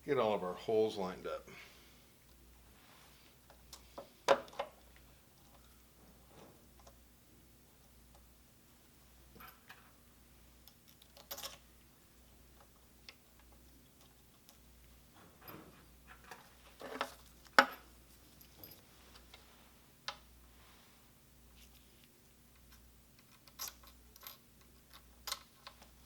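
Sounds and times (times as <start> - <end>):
metal tools clicking and clinking: 10.9 - 11.6.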